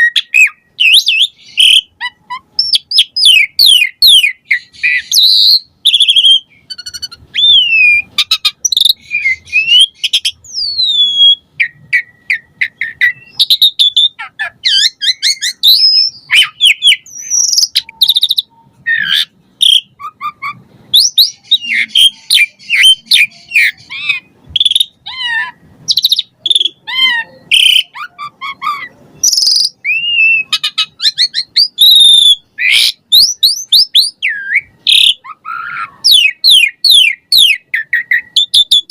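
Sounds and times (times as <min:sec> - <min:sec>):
starling singing: 0:00.0 - 0:38.9.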